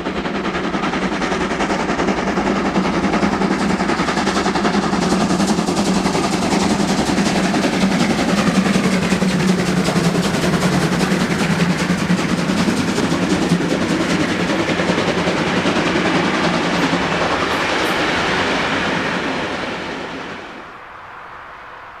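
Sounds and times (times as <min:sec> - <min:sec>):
steam locomotive chuffing: 0:00.0 - 0:20.6.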